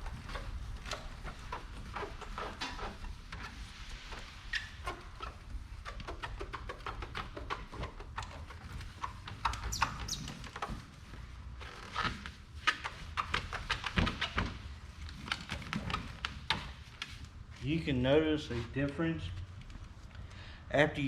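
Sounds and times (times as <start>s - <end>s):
hand rubbing plastic lens: 0.0s - 17.7s
high squeaks: 9.5s - 10.4s.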